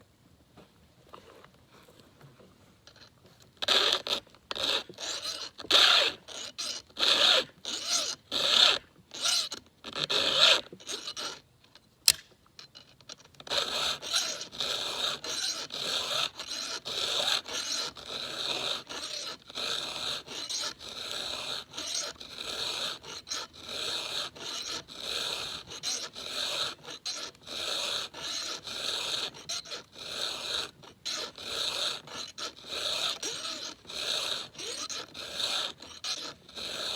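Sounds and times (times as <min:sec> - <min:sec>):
file scraping chainsaw chain: 0:02.9 - 0:11.4, 0:12.1 - 0:36.9
sharp click: 0:12.0 - 0:12.4.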